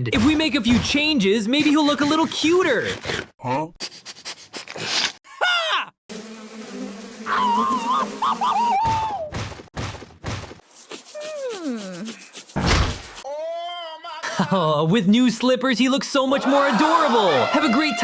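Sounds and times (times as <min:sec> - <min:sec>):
short whoosh: 0:12.5 - 0:13.2.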